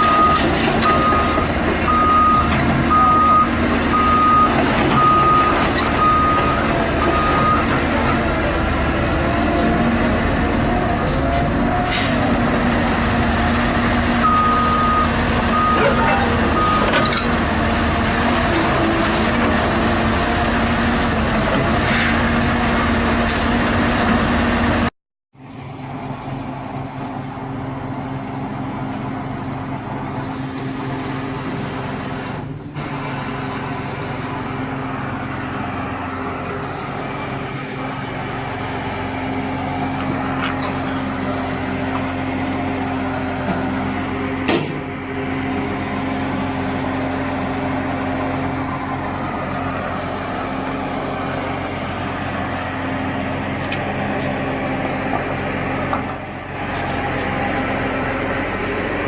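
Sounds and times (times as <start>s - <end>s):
heavy vehicle engine running: 0.0s - 59.0s.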